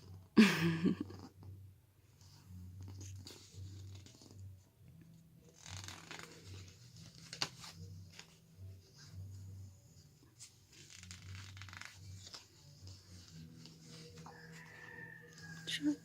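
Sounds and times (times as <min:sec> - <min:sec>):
pages rustling and turning: 0:02.2 - 0:04.4, 0:05.5 - 0:09.5, 0:10.2 - 0:15.6.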